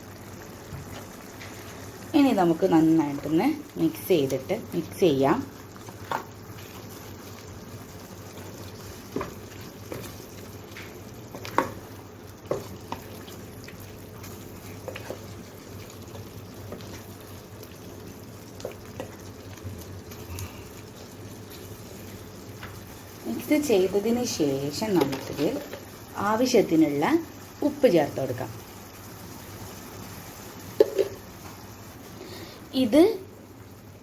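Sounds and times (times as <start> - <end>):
curry simmering hiss: 0.0 - 34.0
spoon stirring curry: 5.6 - 19.5.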